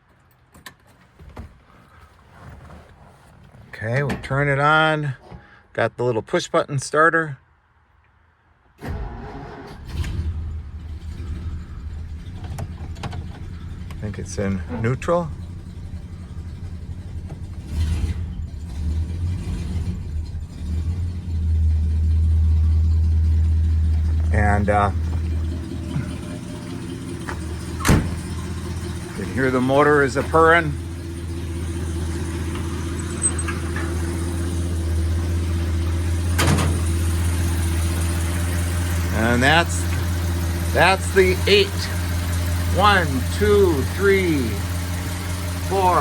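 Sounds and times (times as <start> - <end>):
car engine starting and idling: 8.8 - 46.0.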